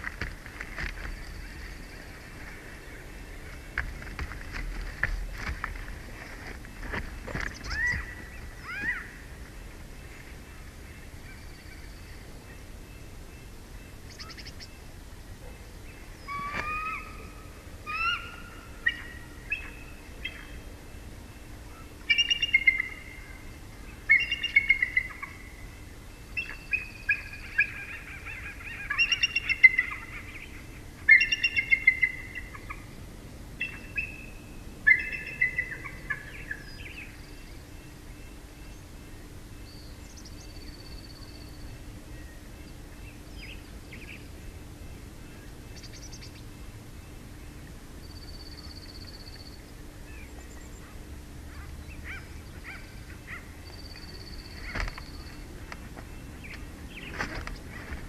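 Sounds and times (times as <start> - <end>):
eagles chittering calls: 6.4 - 12.0, 15.9 - 20.7, 21.7 - 25.5, 26.4 - 32.9, 34.9 - 37.2, 50.6 - 55.5.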